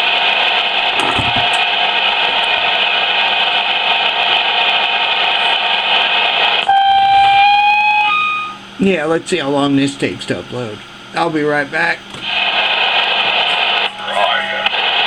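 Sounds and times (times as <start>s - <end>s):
radio static hiss: 0.0s - 8.0s, 8.8s - 15.0s
electronic beep tone: 6.7s - 8.6s.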